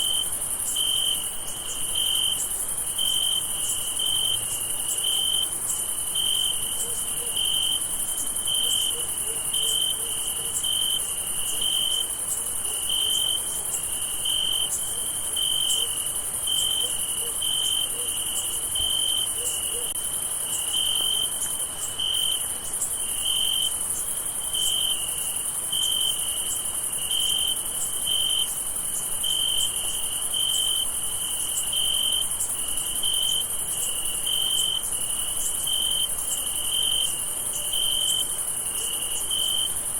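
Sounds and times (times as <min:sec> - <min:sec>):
nearby cricket chirping: 0:00.0 - 0:39.9.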